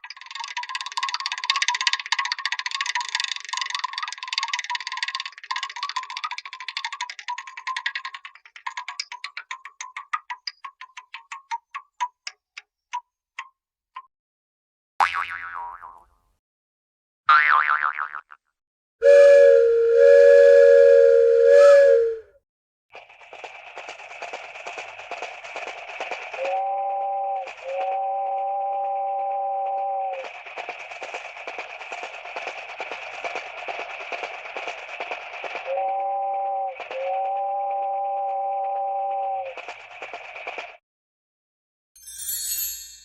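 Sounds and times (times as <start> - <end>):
ticking clicks slowing down: 0.0 - 14.1, 23.0 - 40.8
dense clattering rattle: 30.3 - 35.6.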